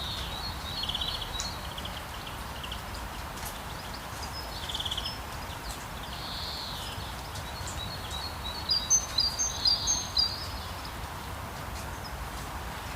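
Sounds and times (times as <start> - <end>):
steady rain hiss: 0.0 - 12.9
bird chirping: 3.6 - 11.0.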